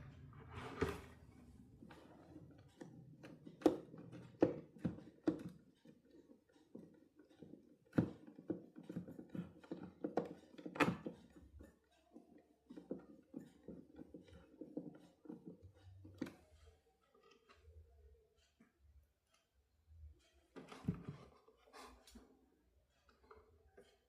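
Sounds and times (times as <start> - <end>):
small parts clicking and knocking: 1.8 - 20.8.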